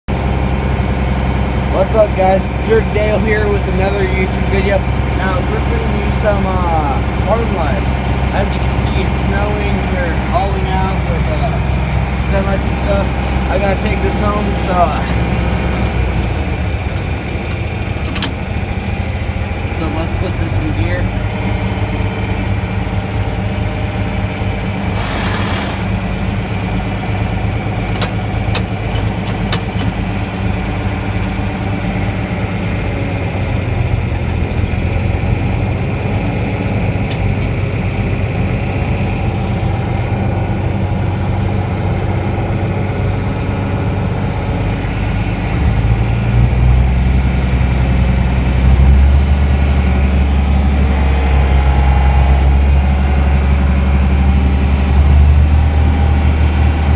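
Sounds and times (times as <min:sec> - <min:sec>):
vehicle engine running: 0:00.0 - 0:56.9
sharp clicks: 0:39.6 - 0:41.7, 0:46.4 - 0:49.4.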